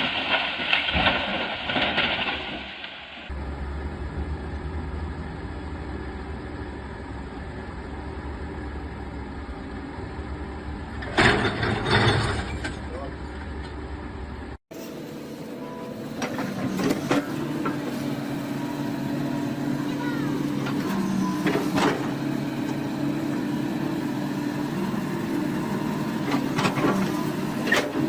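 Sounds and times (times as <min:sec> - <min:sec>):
engine with scattered knocks: 0:00.0 - 0:03.0, 0:10.9 - 0:14.2, 0:16.1 - 0:18.1, 0:20.0 - 0:23.6, 0:24.7 - 0:28.0
loud clatter of impacts: 0:00.0 - 0:03.2, 0:11.0 - 0:12.9
heavy vehicle engine running: 0:03.2 - 0:28.0.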